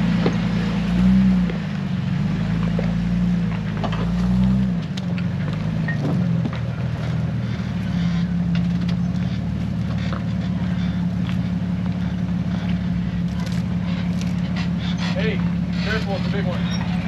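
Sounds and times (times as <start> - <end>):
jeep engine running: 0.0 - 17.0.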